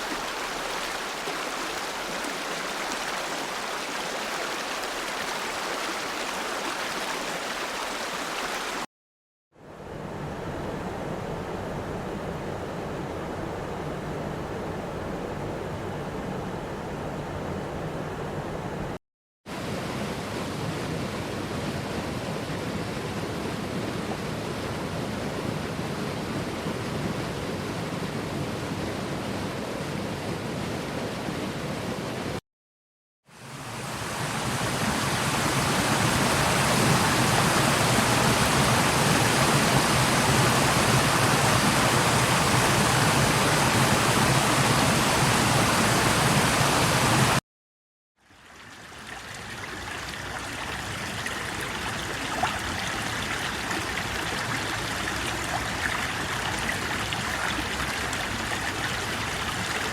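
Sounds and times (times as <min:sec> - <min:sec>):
rushing water: 0:00.0 - 0:08.9, 0:33.3 - 0:47.4, 0:48.2 - 0:59.9.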